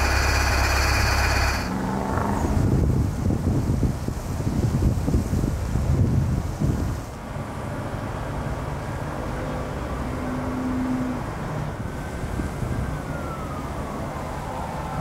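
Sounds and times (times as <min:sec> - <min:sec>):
distant siren wailing: 0:00.0 - 0:01.9, 0:11.7 - 0:15.0
road traffic rumble: 0:00.0 - 0:15.0.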